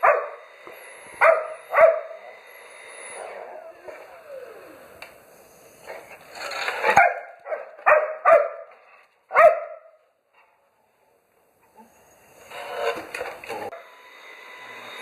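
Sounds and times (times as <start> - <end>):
dog barking: 0.0 - 0.4, 1.2 - 2.2, 6.9 - 10.0.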